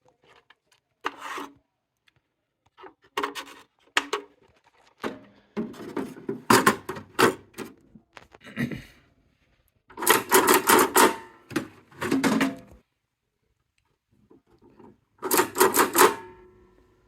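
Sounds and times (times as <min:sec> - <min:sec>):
vending machine wheel scraping: 0:09.9 - 0:12.8.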